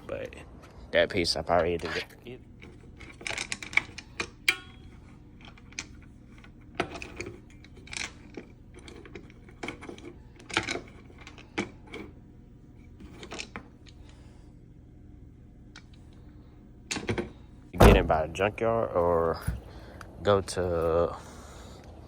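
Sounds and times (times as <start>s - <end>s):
faint low hum: 0.0s - 22.0s.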